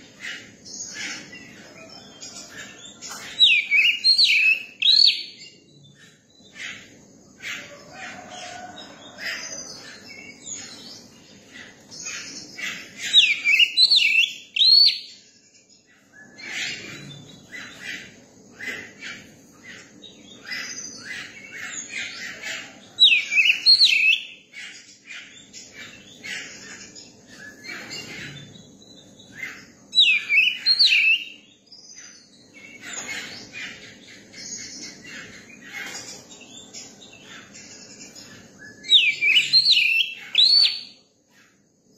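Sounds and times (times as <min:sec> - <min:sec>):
soft bird chirps and twitters: 0:00.0 - 0:41.9
bird whistling song phrases: 0:03.4 - 0:05.4, 0:13.1 - 0:15.1, 0:23.0 - 0:24.4, 0:29.5 - 0:31.4, 0:38.6 - 0:41.0.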